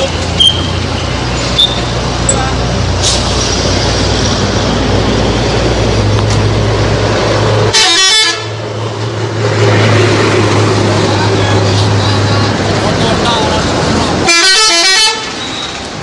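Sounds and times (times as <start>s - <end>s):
bus engine and road noise: 0.0s - 16.0s
multi-tone bus horn: 7.7s - 8.6s, 14.2s - 15.8s.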